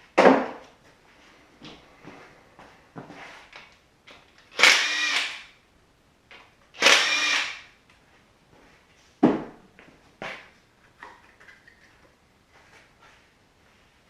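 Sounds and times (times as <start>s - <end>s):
power tool motor whine: 4.6s - 5.4s, 6.8s - 7.7s.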